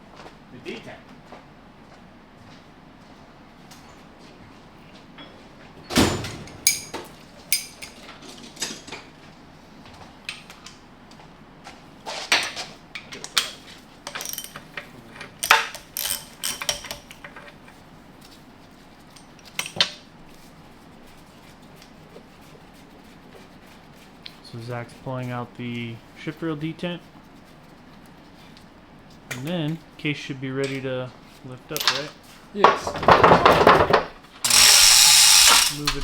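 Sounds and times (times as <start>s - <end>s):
metallic clinks of hand tools: 6.5s - 8.0s, 14.1s - 14.6s, 15.2s - 17.3s, 34.4s - 36.0s.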